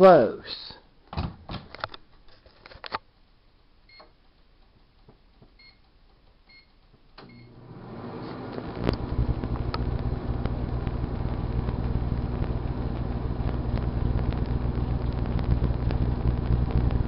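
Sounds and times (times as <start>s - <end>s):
microwave oven humming: 6.5s - 17.0s.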